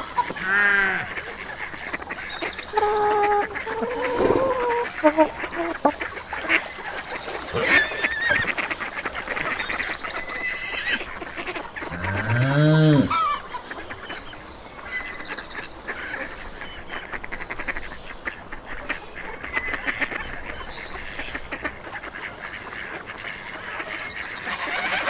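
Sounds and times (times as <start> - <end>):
ducks quacking: 0.0 - 25.0
geese honking: 0.0 - 25.0
low rising and falling call: 2.7 - 5.9.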